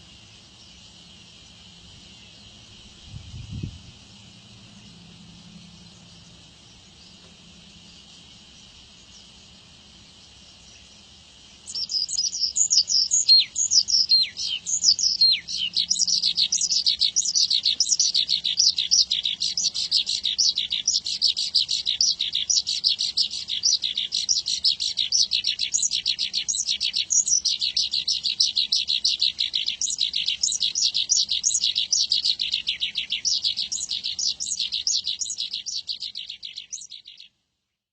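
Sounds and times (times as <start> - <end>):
faint high hiss: 0.0 - 37.8
lark singing: 11.6 - 37.4.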